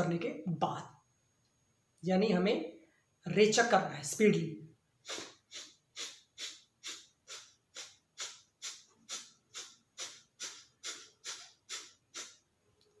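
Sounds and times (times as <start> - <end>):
forceful nasal exhalations: 5.0 - 12.4.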